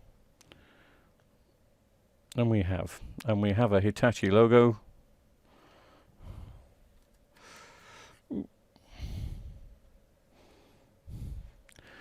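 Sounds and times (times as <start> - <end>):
man humming: 8.3 - 8.6.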